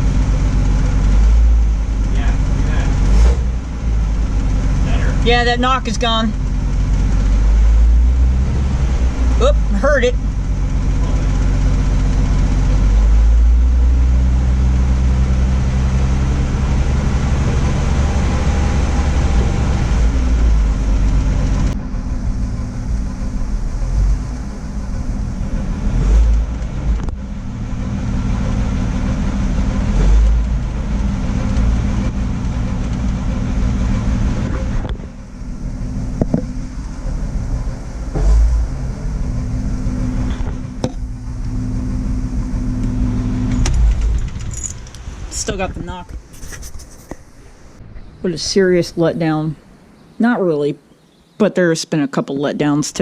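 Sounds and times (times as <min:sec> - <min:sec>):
pickup engine running: 0:00.0 - 0:50.0
engine knock: 0:21.0 - 0:35.2.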